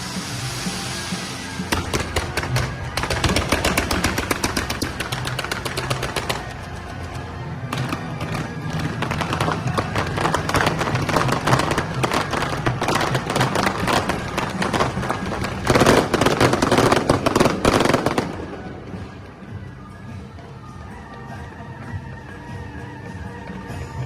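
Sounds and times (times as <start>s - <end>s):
fireworks crackling: 0.0s - 19.8s.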